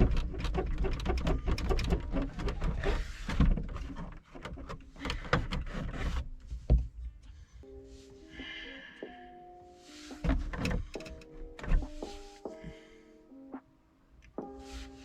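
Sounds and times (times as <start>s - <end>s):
plastic trim clicking and rattling: 0.0s - 6.2s, 10.3s - 11.9s.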